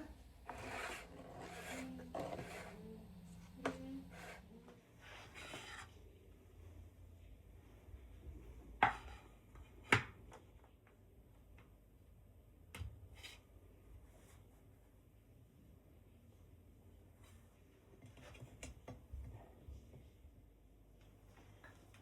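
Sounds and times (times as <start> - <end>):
low steady hum: 0.0 - 9.7.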